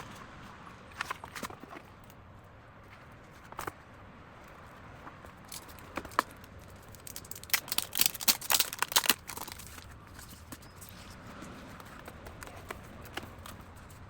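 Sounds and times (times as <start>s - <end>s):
packaging sharp clicks: 5.5s - 10.3s
packaging crinkling: 5.5s - 10.6s.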